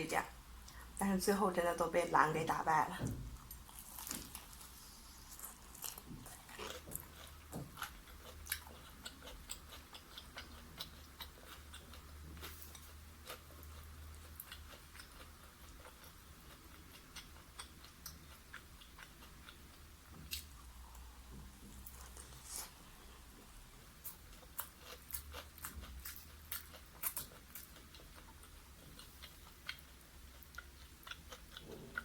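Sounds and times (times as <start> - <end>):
low steady hum: 0.0 - 32.0
person chewing crunchy food: 3.4 - 32.0.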